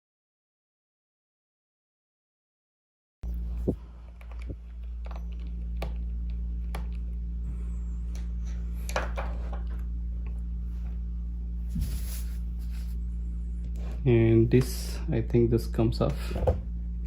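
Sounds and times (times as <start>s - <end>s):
steady low hum: 3.2s - 17.0s
short scrape: 11.7s - 13.0s.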